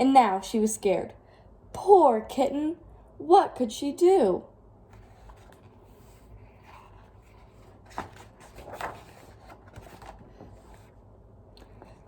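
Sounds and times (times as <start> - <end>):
faint low hum: 0.0 - 12.0
book page turning: 4.9 - 11.0.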